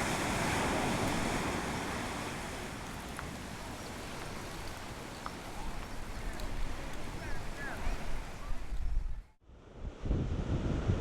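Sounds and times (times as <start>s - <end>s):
sea surf washing on shore: 0.0s - 8.8s
wind: 0.0s - 11.0s.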